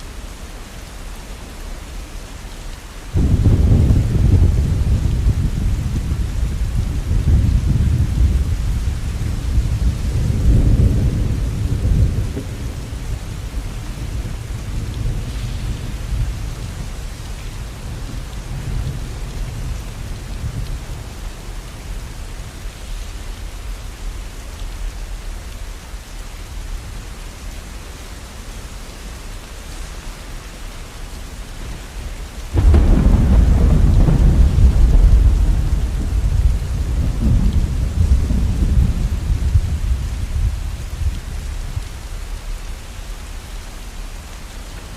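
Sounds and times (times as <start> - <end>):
steady rainfall: 0.0 - 44.9
thunder rumbling: 3.1 - 23.0, 31.7 - 42.3.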